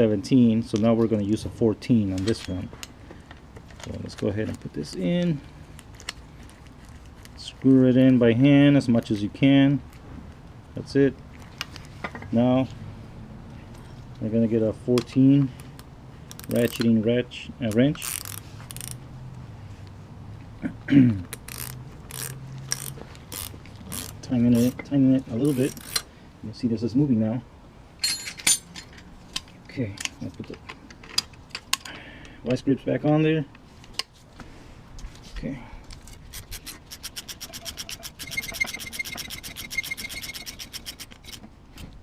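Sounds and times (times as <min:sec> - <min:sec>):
ratcheting wrench clicking: 0:16.3 - 0:16.9, 0:17.7 - 0:19.0, 0:21.3 - 0:24.8, 0:25.4 - 0:26.1, 0:36.3 - 0:41.4
brief falling squeak: 0:38.2 - 0:40.6.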